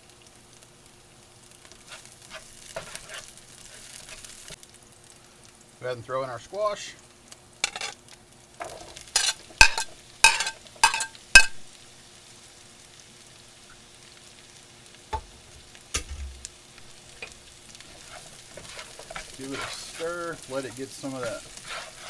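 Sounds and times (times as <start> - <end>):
faint sizzle: 0.0 - 22.0
utensil knocking on metal pan: 9.6 - 11.6, 15.2 - 16.5.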